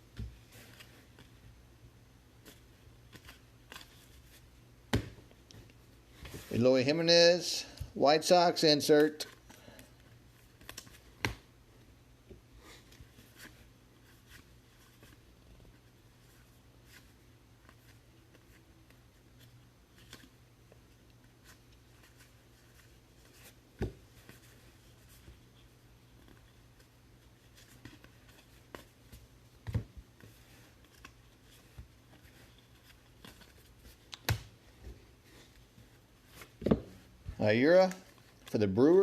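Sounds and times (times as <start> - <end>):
cards rustling and sliding: 0.1 - 1.6, 2.4 - 6.6, 8.9 - 11.5, 21.2 - 39.0.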